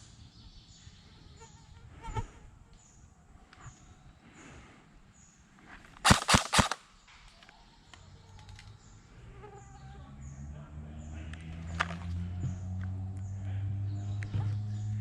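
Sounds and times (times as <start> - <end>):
airsoft gun shots: 6.0 - 6.9.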